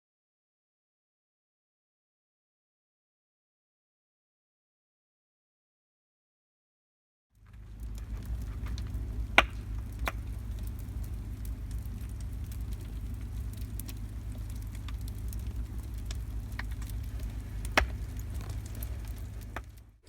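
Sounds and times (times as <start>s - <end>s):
steady low rumble: 7.4s - 20.0s
wood fire crackling and popping: 7.4s - 20.0s.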